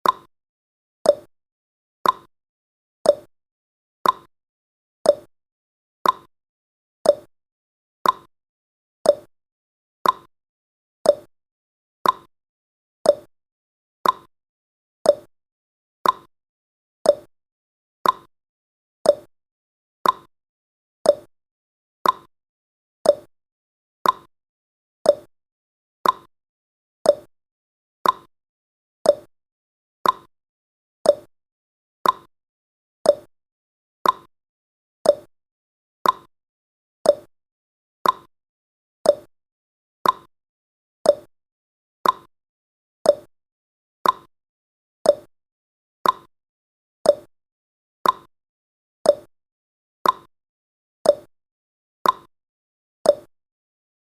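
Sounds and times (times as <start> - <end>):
timer ticking: 0.0 - 0.3, 1.1 - 1.3, 2.0 - 2.3, 3.1 - 3.3, 4.0 - 4.3, 5.1 - 5.3, 6.0 - 6.3, 7.1 - 7.3, 8.0 - 8.3, 9.1 - 9.3, 10.0 - 10.3, 11.1 - 11.3, 12.0 - 12.3, 13.1 - 13.3, 14.0 - 14.3, 15.1 - 15.3, 16.0 - 16.3, 17.1 - 17.3, 18.0 - 18.3, 19.1 - 19.3, 20.0 - 20.3, 21.1 - 21.3, 22.0 - 22.3, 23.0 - 23.3, 24.0 - 24.3, 25.1 - 25.3, 26.0 - 26.3, 27.1 - 27.3, 28.0 - 28.3, 29.0 - 29.3, 30.0 - 30.3, 31.0 - 31.3, 32.0 - 32.3, 33.1 - 33.3, 34.0 - 34.3, 35.0 - 35.3, 36.0 - 36.3, 37.0 - 37.3, 38.0 - 38.3, 39.1 - 39.3, 40.0 - 40.3, 41.1 - 41.3, 42.0 - 42.3, 43.1 - 43.3, 44.0 - 44.3, 45.1 - 45.3, 46.0 - 46.3, 47.1 - 47.3, 48.0 - 48.3, 49.1 - 49.3, 50.0 - 50.3, 51.1 - 51.3, 52.0 - 52.3, 53.1 - 53.3.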